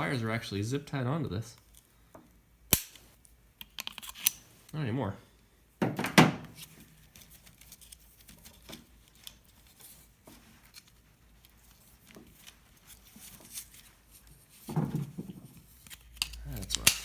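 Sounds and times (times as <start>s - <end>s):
clicks and rustles of handled wires: 6.6s - 17.0s.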